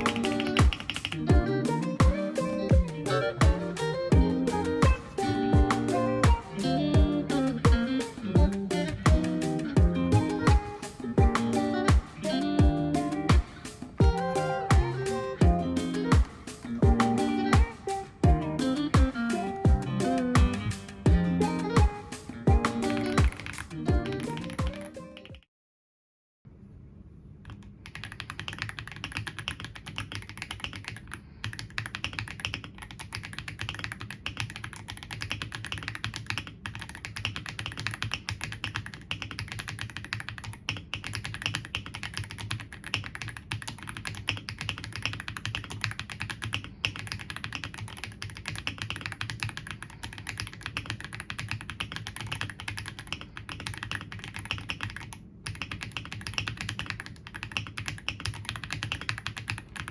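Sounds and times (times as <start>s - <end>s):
mechanical keyboard typing: 0.0s - 1.5s, 22.5s - 25.4s, 27.4s - 59.9s.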